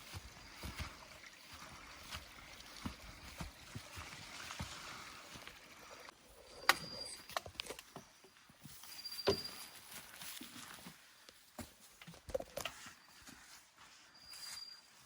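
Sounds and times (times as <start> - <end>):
footsteps on gravel trail: 0.0 - 6.1.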